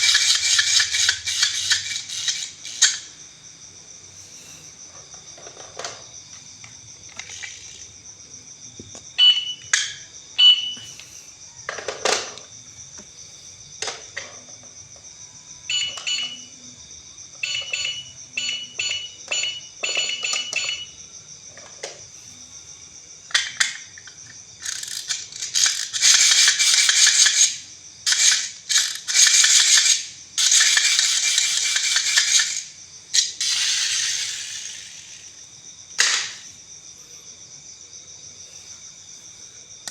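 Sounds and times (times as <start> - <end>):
plastic toys clicking: 0.0 - 3.2, 6.6 - 7.9, 23.3 - 35.3, 36.0 - 36.4
short electronic beeps: 9.2 - 9.6, 10.4 - 10.8.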